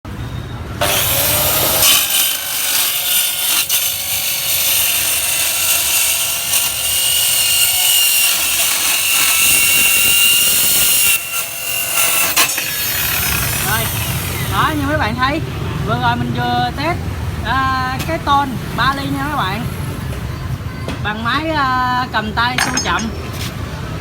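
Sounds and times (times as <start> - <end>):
metal saw grinding with ringing whine: 0.8 - 14.8, 22.6 - 23.2.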